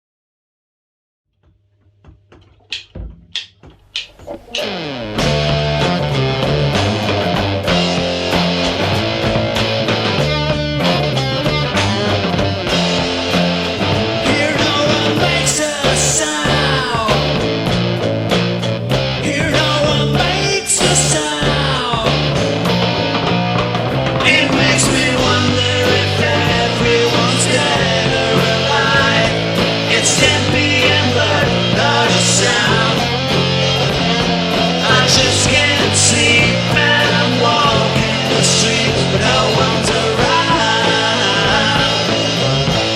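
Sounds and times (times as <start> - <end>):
bass guitar: 1.8 - 42.9
drums playing steady beat: 2.0 - 42.9
electric guitar chords: 3.9 - 42.9
person singing: 14.1 - 17.4, 19.2 - 22.4, 24.2 - 33.3, 34.6 - 42.3.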